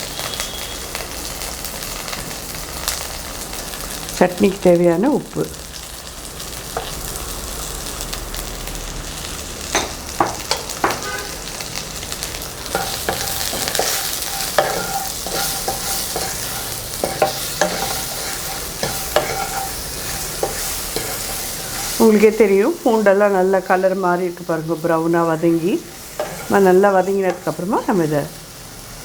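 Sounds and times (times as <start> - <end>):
garlic sizzling in oil: 0.0 - 29.0
utensil scraping metal pan: 12.7 - 22.0, 25.9 - 27.6.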